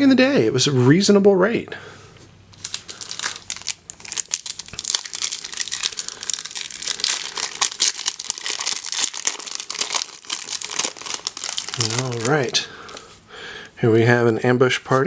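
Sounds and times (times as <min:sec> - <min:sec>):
wrapper crinkling and tearing: 0:02.5 - 0:13.2.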